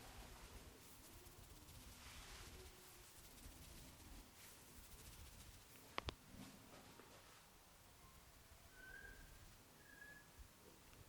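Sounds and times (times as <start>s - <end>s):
faint high steady tones: 7.7s - 10.5s.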